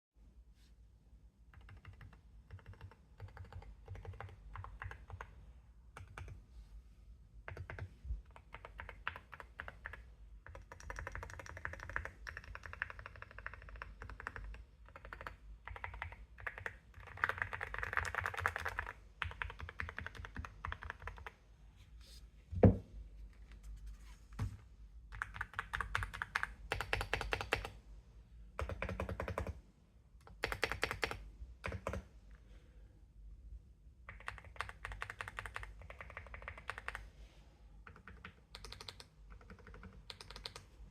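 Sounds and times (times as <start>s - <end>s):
mechanical keyboard typing: 1.5s - 5.3s, 6.0s - 6.4s, 7.5s - 21.4s, 25.1s - 27.8s, 28.6s - 29.6s, 30.2s - 32.1s, 34.1s - 37.0s, 37.9s - 40.7s.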